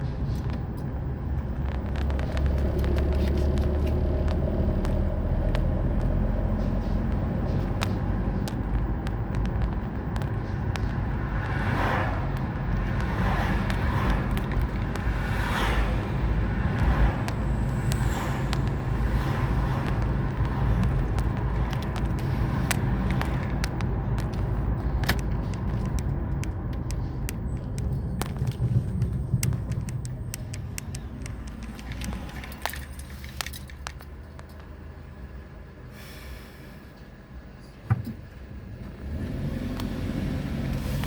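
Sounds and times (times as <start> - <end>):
car engine and road rumble: 0.0 - 41.0
light clicks and rattles: 19.8 - 34.8.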